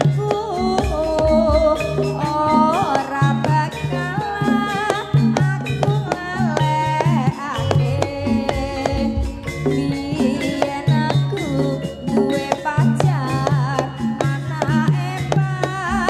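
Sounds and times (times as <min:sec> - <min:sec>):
hand drums beating: 0:00.0 - 0:16.0
ornamented melody: 0:00.0 - 0:16.0
sharp metallic strikes: 0:07.6 - 0:11.8.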